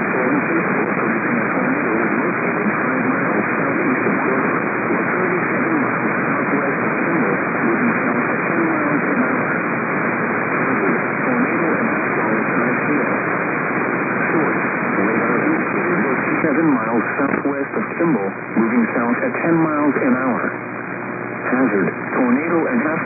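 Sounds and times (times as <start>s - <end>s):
radio static hiss: 0.0s - 23.0s.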